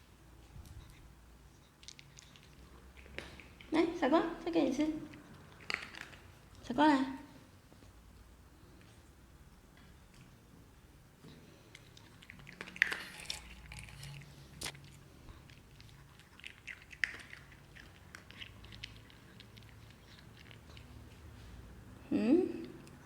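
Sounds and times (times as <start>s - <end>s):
pet chewing a treat: 0.6s - 4.0s, 5.0s - 6.6s, 11.2s - 21.6s.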